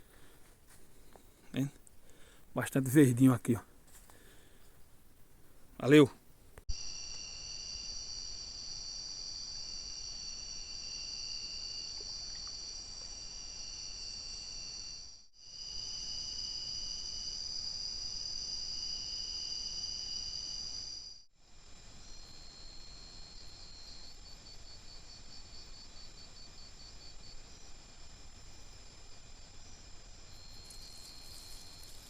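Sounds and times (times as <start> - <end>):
insects high-pitched trilling: 6.7 - 32.0
lower insect trill: 6.7 - 32.0.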